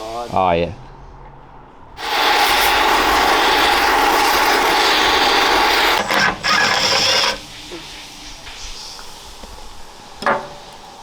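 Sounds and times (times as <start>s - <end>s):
power tool running: 2.0s - 7.5s.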